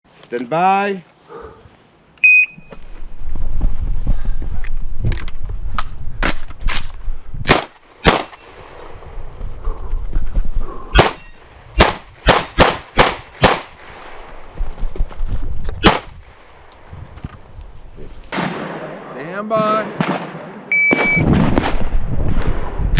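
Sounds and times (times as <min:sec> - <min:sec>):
shotgun shots: 0:07.5 - 0:08.5, 0:11.0 - 0:13.8, 0:15.8 - 0:16.2
shot timer beep: 0:20.7 - 0:21.3.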